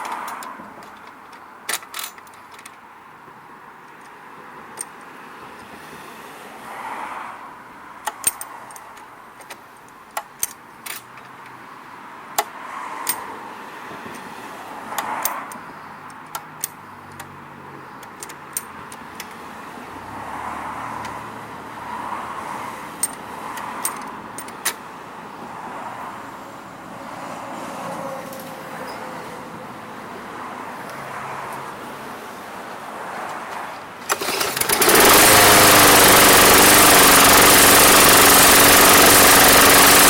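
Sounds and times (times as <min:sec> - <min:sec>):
metallic tool clicks and clinks: 0:08.1 - 0:09.6, 0:13.0 - 0:13.2.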